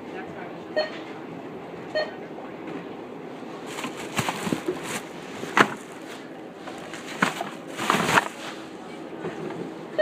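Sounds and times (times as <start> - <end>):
steady hum: 2.4 - 10.0
knocks and clatters: 3.7 - 6.1, 6.7 - 8.4.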